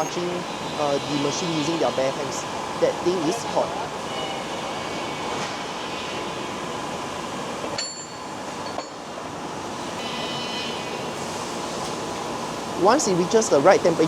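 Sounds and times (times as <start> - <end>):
factory machinery hum and hiss: 0.0 - 14.0
high metallic ringing: 7.8 - 9.0.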